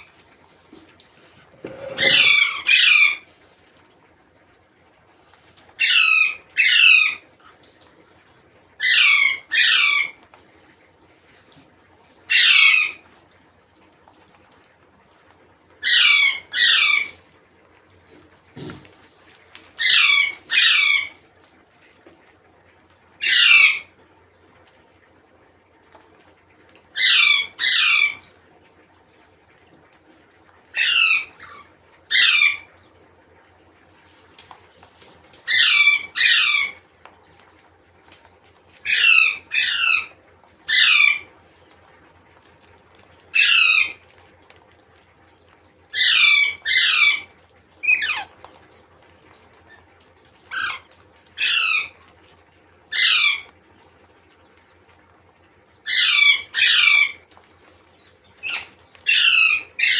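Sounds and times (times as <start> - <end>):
parrot squawking: 1.7 - 3.2, 5.8 - 7.2, 8.8 - 10.2, 12.3 - 13.0, 15.8 - 17.2, 19.8 - 21.2, 23.2 - 23.9, 27.0 - 28.2, 30.7 - 32.7, 35.5 - 36.8, 38.8 - 40.1, 40.7 - 41.2, 43.3 - 44.0, 46.0 - 48.3, 50.5 - 52.0, 52.9 - 53.5, 55.9 - 57.2, 58.4 - 59.9.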